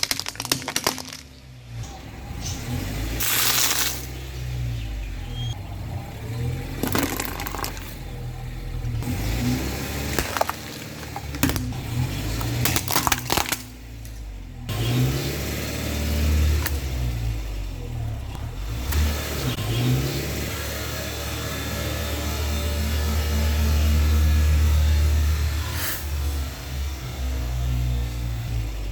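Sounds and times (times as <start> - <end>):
tyres crushing objects: 0.0 - 1.6, 3.2 - 4.2, 6.7 - 8.1, 9.0 - 14.4
car engine running slowly: 1.3 - 3.2, 4.1 - 28.9.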